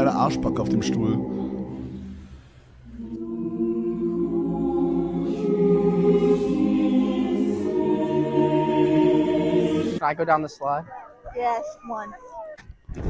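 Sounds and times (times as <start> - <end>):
voices singing held notes: 0.0 - 10.1.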